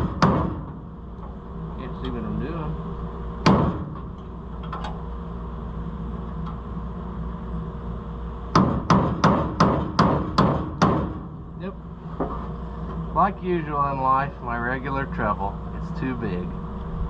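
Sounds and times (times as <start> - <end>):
hammer striking steel: 8.5 - 11.3.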